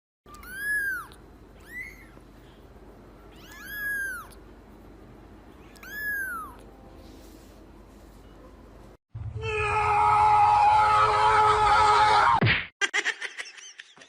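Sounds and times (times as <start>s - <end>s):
cat meowing: 0.3s - 2.2s, 3.3s - 4.4s, 5.6s - 6.6s.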